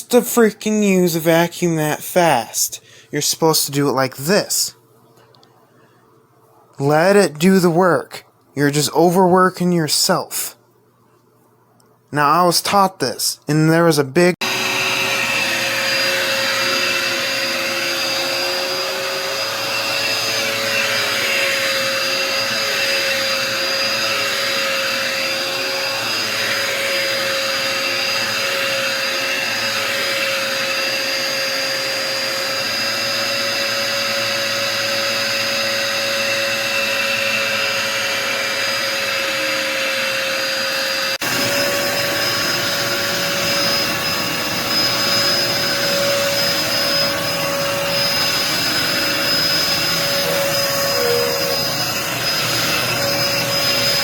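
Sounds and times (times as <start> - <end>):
vacuum cleaner running: 14.4 - 54.0.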